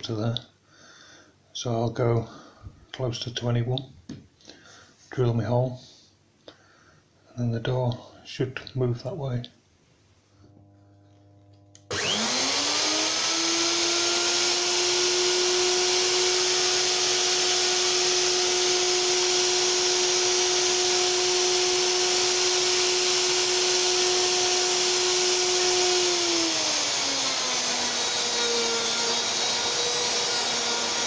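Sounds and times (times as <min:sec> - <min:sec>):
electric motor whining: 0:11.9 - 0:31.0.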